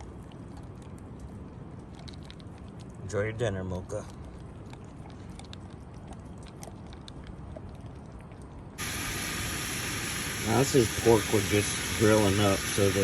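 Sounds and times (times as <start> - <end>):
dog crunching kibble: 0.0 - 8.4
pork sizzling on a grill: 8.8 - 13.0.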